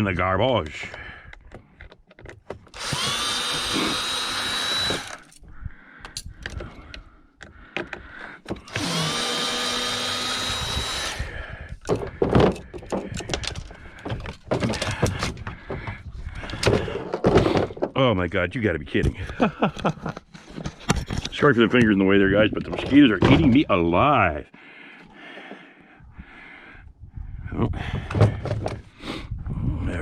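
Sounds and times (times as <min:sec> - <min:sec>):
clicks and knocks of parts handled: 0:00.6 - 0:03.7, 0:04.8 - 0:08.9, 0:11.7 - 0:18.0, 0:19.0 - 0:23.6
electric drill-driver running: 0:02.7 - 0:05.3, 0:08.6 - 0:11.4.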